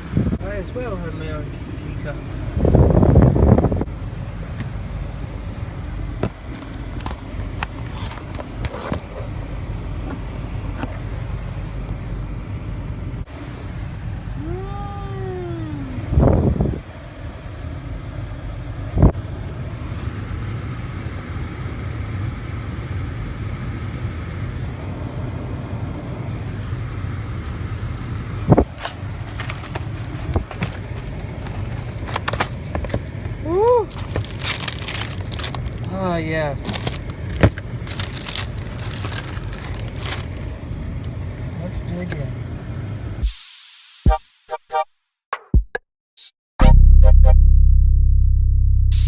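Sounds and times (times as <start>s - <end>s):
car engine and road rumble: 0.0s - 43.2s, 46.7s - 49.0s
rising and falling tone: 46.6s - 49.0s.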